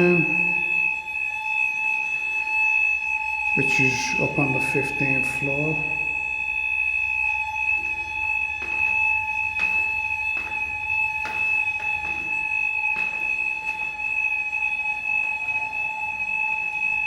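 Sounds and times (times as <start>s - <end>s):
two-pitch fire alarm tone: 0.0s - 17.0s
faint knocks: 7.8s - 14.2s.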